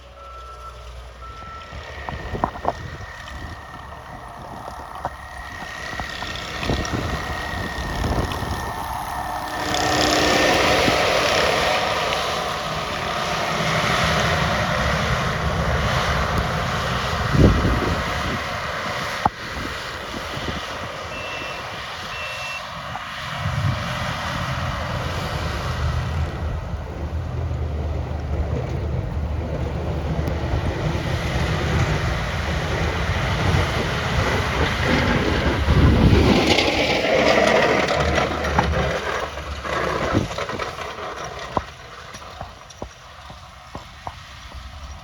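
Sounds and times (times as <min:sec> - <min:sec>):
reversing beeper: 0:00.0 - 0:12.7, 0:21.0 - 0:22.9
heavy truck engine rumbling: 0:00.0 - 0:45.0.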